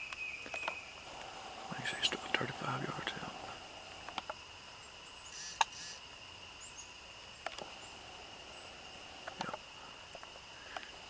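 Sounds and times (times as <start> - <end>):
insects droning: 0.0 - 11.0
faint clicks: 0.1 - 1.4, 4.0 - 4.4, 7.4 - 7.8, 9.2 - 11.0.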